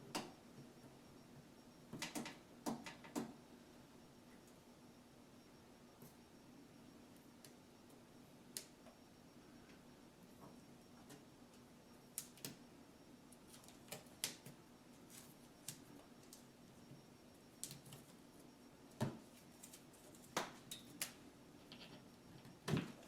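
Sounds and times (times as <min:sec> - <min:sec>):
faint steady hum: 0:00.0 - 0:23.0
small clicks and taps: 0:01.9 - 0:03.3.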